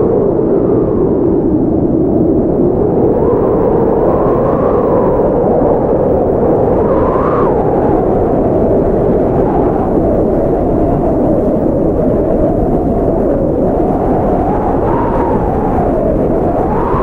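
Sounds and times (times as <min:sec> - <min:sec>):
howling blizzard wind: 0:00.0 - 0:17.0.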